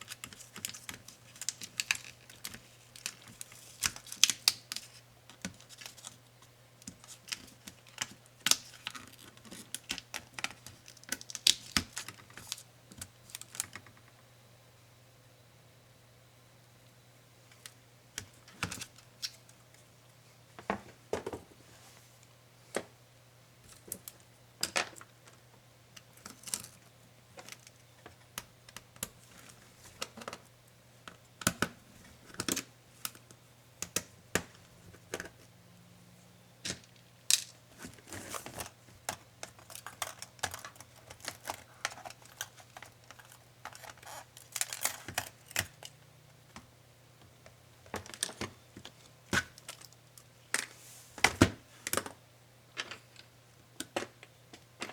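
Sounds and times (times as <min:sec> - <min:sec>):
laptop parts clicking and rattling: 0:00.0 - 0:06.2, 0:36.7 - 0:46.6
faint low hum: 0:00.0 - 0:54.9.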